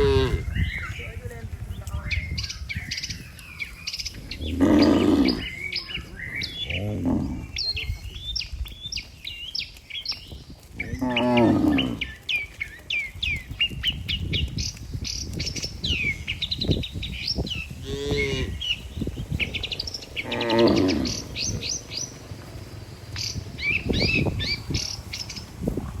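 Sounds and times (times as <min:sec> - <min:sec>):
cattle mooing: 0:00.0 - 0:00.4, 0:04.3 - 0:05.7, 0:06.4 - 0:07.7, 0:10.8 - 0:12.1, 0:17.8 - 0:18.7, 0:20.2 - 0:21.8
small birds chirping: 0:00.0 - 0:26.0.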